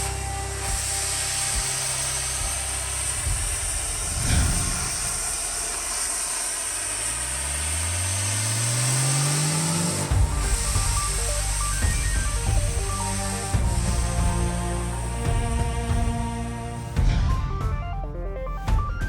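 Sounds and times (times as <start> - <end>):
engine revving up: 0.0 - 17.1
high hiss: 0.0 - 17.2.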